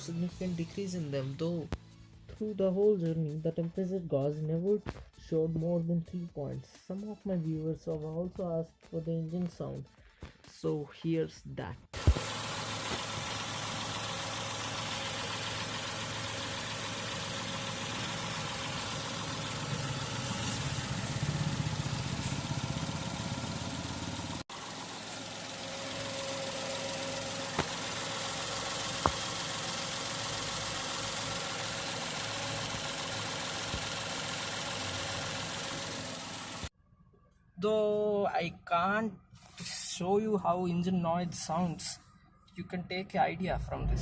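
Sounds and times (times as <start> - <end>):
car engine idling: 12.0 - 36.7.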